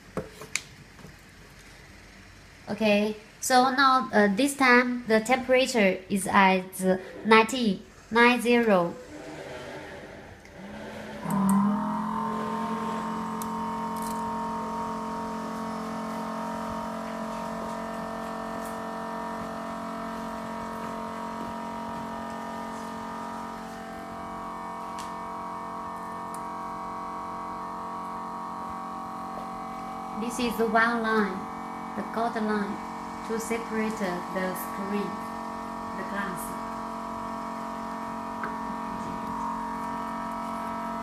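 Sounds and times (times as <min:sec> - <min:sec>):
vacuum pump electric hum: 0:00.0 - 0:41.0.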